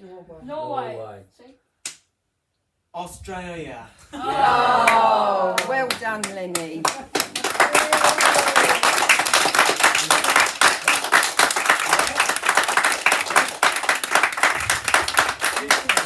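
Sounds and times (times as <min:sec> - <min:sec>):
small group clapping: 0:04.2 - 0:16.0.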